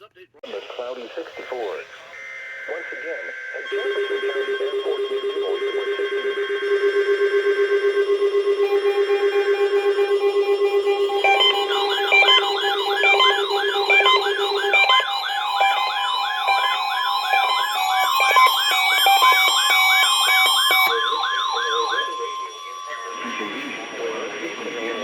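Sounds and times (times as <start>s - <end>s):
warbling siren: 1.5s - 25.0s
low fast-pulsing beep: 2.2s - 25.0s
stepping beeps: 11.0s - 25.0s.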